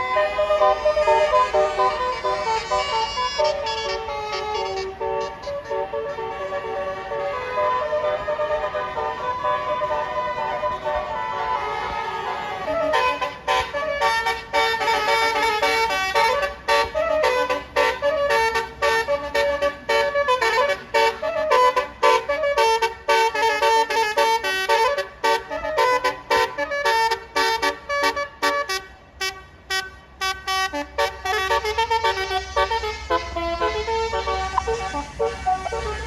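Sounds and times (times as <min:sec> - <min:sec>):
multi-note bus horn tune: 0:00.0 - 0:36.0.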